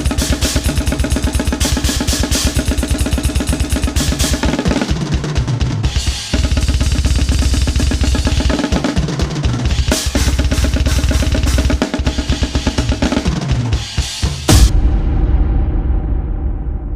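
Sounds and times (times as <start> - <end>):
drum kit blast beats: 0.0 - 16.9
crash cymbal hits: 14.5 - 16.9.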